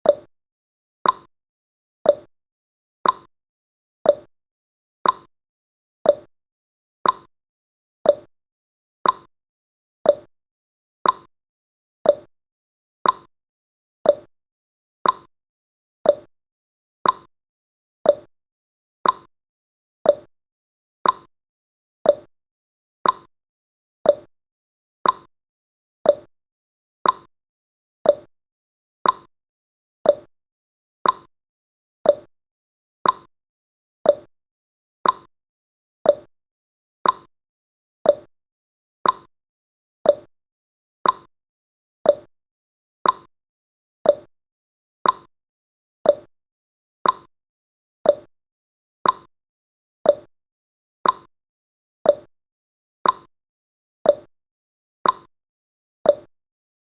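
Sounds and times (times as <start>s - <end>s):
countdown timer ticking: 30.1s - 30.3s, 32.1s - 32.3s, 34.1s - 34.3s, 36.1s - 36.3s, 38.1s - 38.3s, 40.1s - 40.3s, 42.1s - 42.3s, 44.1s - 44.3s, 46.1s - 46.3s, 47.0s - 47.3s, 48.1s - 48.3s, 50.1s - 50.3s.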